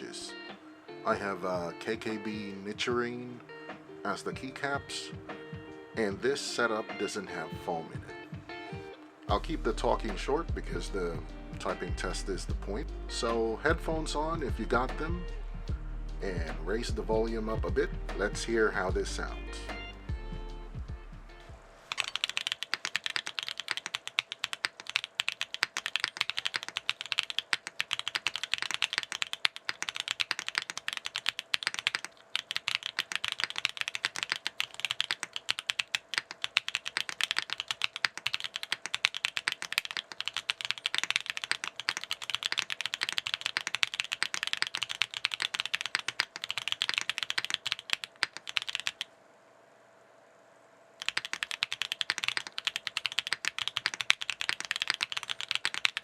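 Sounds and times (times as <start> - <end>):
mechanical keyboard typing: 21.9 - 49.1, 51.0 - 56.0.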